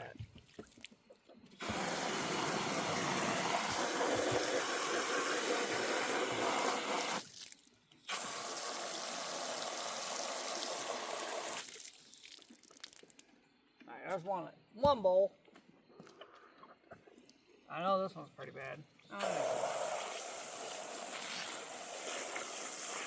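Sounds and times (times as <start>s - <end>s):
running water rinsing a bowl: 1.6s - 12.8s.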